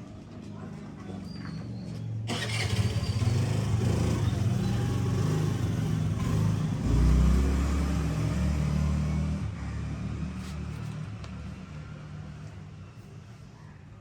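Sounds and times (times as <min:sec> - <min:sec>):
vehicle engine running: 0:02.3 - 0:13.1.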